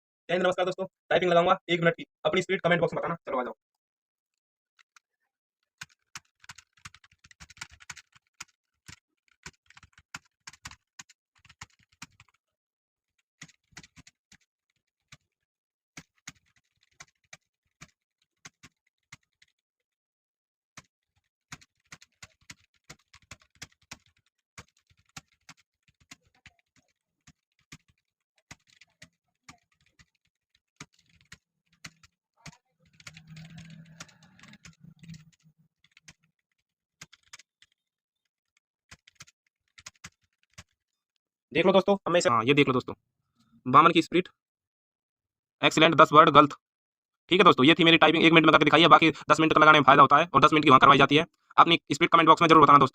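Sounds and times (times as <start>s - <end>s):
typing on computer keyboard: 4.8s - 12.4s, 13.2s - 15.4s, 16.0s - 19.6s, 20.8s - 40.9s.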